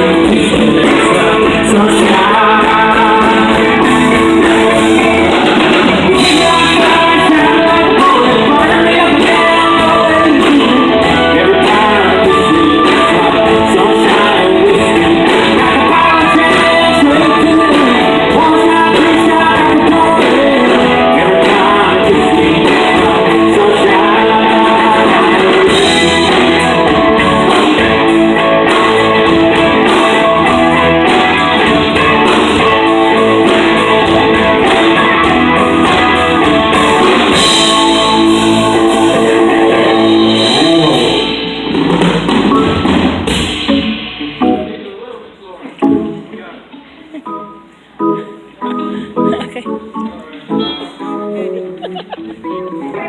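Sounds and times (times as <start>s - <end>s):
strummed electric guitar: 0.0s - 44.9s, 48.1s - 53.0s
live country-rock band playing: 0.0s - 45.0s, 45.7s - 53.0s.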